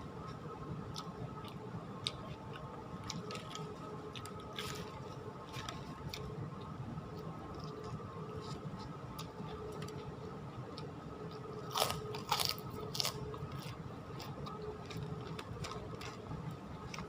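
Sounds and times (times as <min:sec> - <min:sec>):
close-up chewing: 0:00.2 - 0:17.0
loud crunches: 0:11.6 - 0:16.2.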